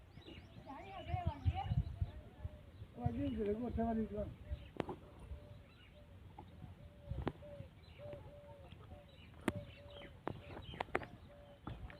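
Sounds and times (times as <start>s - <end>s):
bird calling: 4.5s - 11.9s.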